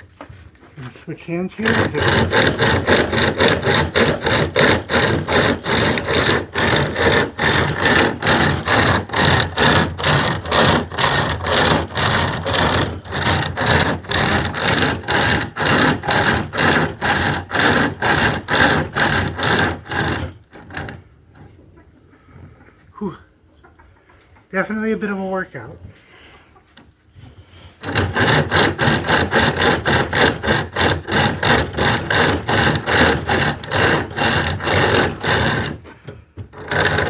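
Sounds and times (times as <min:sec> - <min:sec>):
hand chainsaw rasping through wood: 0:01.2 - 0:21.1, 0:27.4 - 0:37.0.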